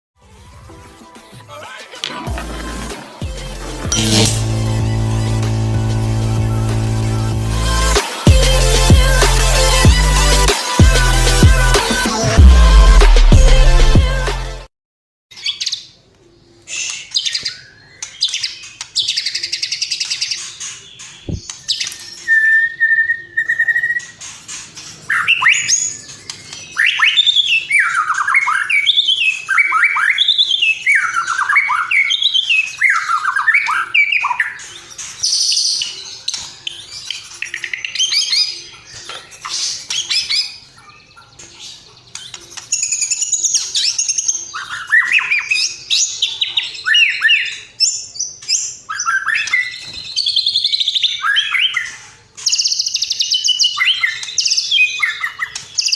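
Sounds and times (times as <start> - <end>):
held whistled note: 3.9 - 8.6.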